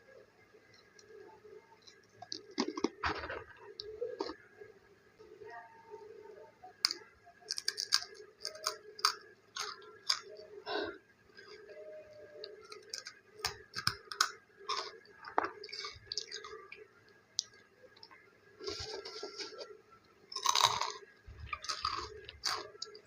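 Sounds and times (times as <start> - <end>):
crispy snack chewing crunches: 1.8 - 4.4, 6.9 - 10.4, 12.4 - 16.8, 18.6 - 19.7, 20.3 - 23.0.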